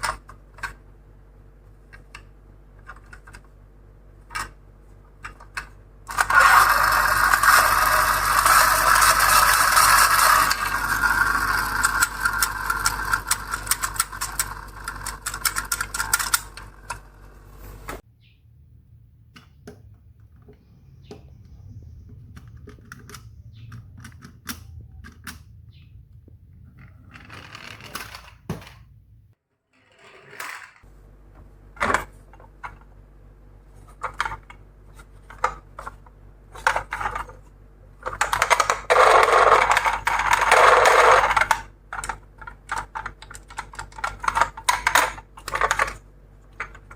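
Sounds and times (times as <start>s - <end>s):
toy cars rattling: 6.1s - 17.1s, 26.8s - 28.7s, 29.8s - 30.9s, 38.0s - 46.0s.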